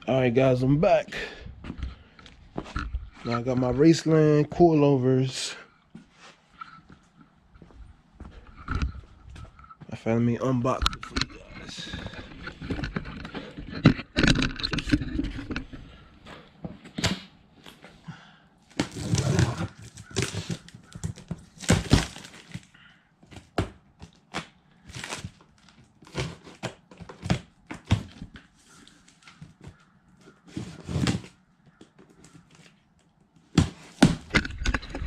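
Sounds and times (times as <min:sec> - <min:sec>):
packaging rustling: 0:18.7 - 0:22.8, 0:24.3 - 0:29.8.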